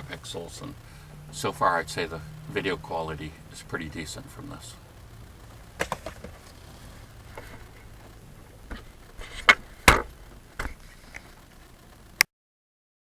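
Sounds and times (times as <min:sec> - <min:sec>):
camera handling knocks and clicks: 0:05.8 - 0:06.5.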